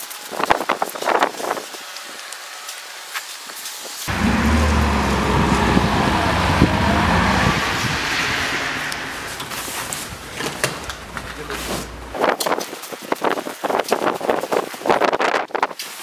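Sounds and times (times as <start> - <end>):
outdoor hiss: 1.7 - 12.2
vehicle engine running: 4.1 - 12.2.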